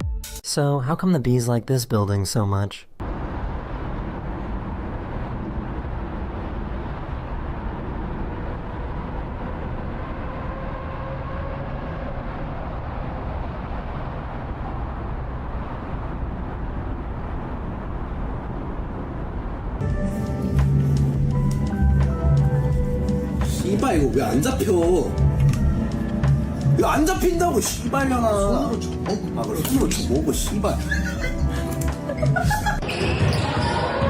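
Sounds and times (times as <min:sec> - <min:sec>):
faint hum: 0:03.0 - 0:11.2
outdoor ambience noise: 0:03.0 - 0:34.0.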